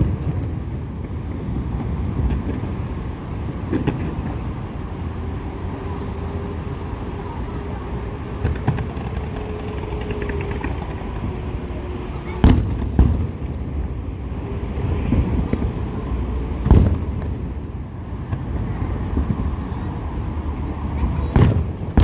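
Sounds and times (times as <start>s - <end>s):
background rumble: 0.0s - 22.0s
fireworks bursting in deep booms: 12.4s - 14.4s, 15.1s - 17.6s, 21.3s - 22.0s.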